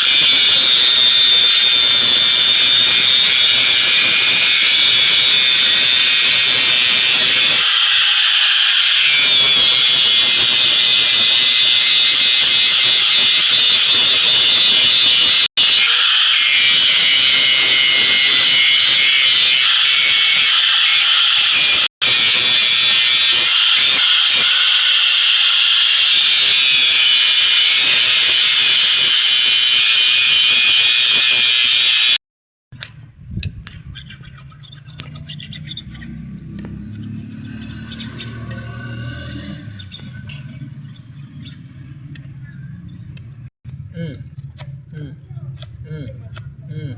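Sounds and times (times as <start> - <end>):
power grinder grinding steel: 0.0 - 32.2, 33.8 - 43.5
knife blade rasping on abrasive: 33.7 - 38.7.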